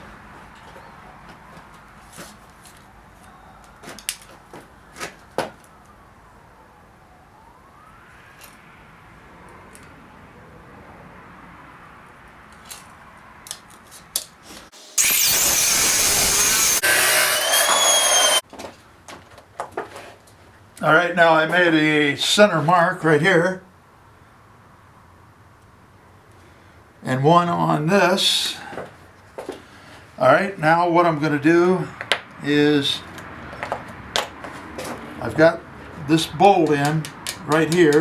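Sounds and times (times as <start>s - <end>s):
power tool grinding steel: 14.8s - 18.4s.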